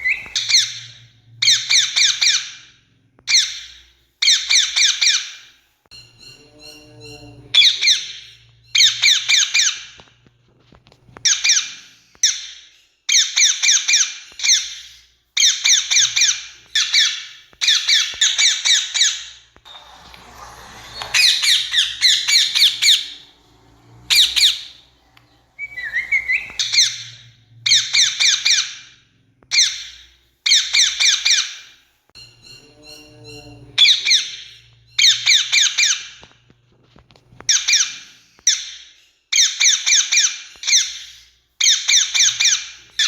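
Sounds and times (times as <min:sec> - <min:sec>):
parakeets screeching: 0:00.0 - 0:10.1, 0:11.2 - 0:36.4, 0:37.4 - 0:43.0.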